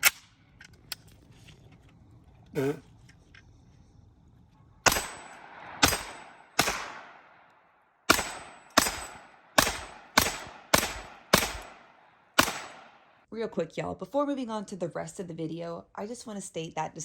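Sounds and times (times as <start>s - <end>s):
pistol shots echoing: 4.8s - 13.2s.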